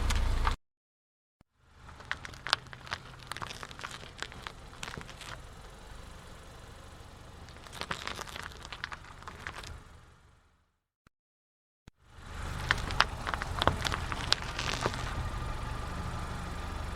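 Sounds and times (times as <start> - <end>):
car engine hum: 0.0 - 0.6, 1.6 - 10.6, 12.0 - 16.9
crackling and crunching clicks: 1.8 - 5.6, 7.5 - 9.8, 12.4 - 15.3.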